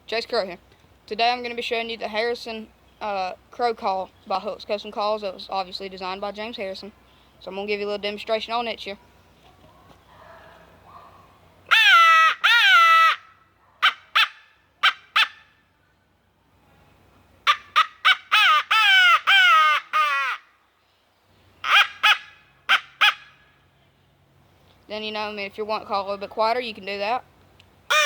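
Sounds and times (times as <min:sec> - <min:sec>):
crow call caws: 0:17.5 - 0:20.5.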